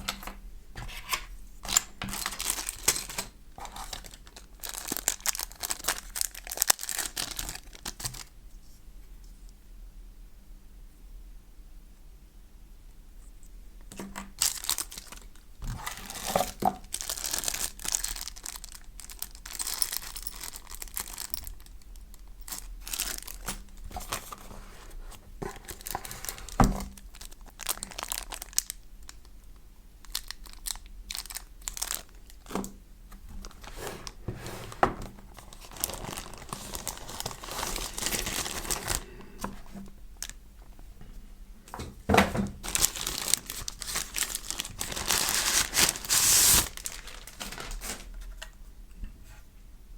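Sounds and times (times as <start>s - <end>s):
packaging crinkling and tearing: 0.8s - 8.3s, 14.0s - 34.2s, 35.1s - 40.4s, 42.6s - 48.6s.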